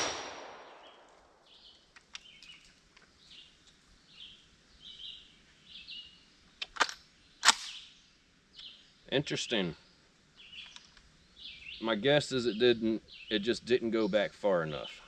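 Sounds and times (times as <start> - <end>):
rifle shot echo: 0.0 - 1.4
outdoor background noise: 0.0 - 15.0
small bird chirping: 10.4 - 13.4.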